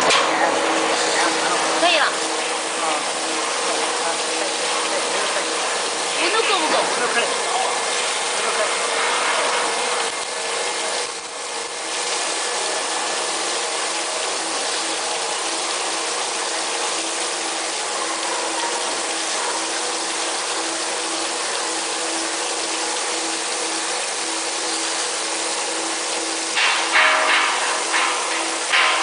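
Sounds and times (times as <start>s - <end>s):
low hum: 20.8s - 29.0s.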